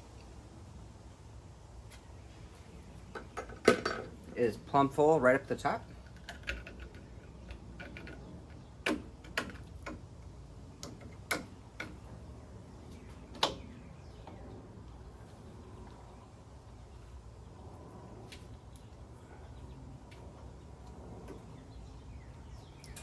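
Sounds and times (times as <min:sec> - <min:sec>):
low steady hum: 0:00.0 - 0:23.0
sharp clicks and knocks: 0:06.0 - 0:10.2, 0:10.8 - 0:12.1.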